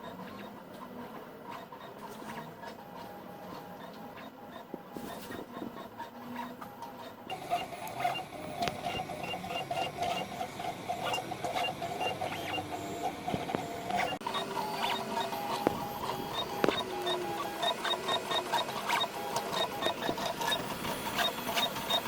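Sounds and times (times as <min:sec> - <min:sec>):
stepper motors whirring: 0:07.3 - 0:22.0.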